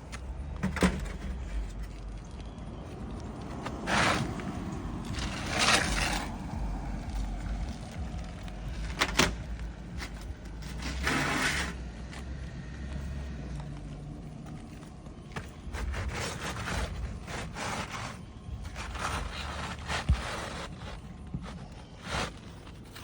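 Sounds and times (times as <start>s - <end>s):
shingle scraping rips: 3.4s - 7.9s, 8.7s - 12.4s, 15.6s - 23.0s.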